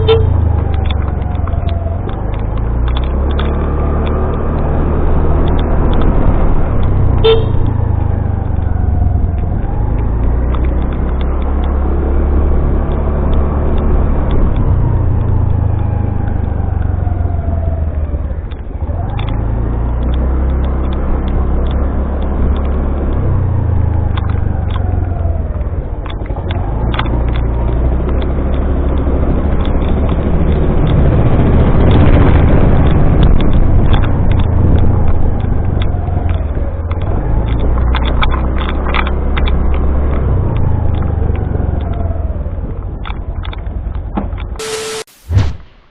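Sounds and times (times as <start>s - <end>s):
motorcycle engine running: 0.0s - 19.6s
wind buffeting microphone: 20.3s - 44.2s.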